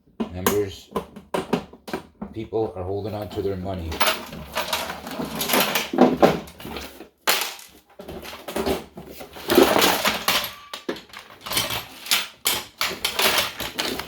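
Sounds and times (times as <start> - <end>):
metal parts clattering and rattling: 3.0 - 14.0.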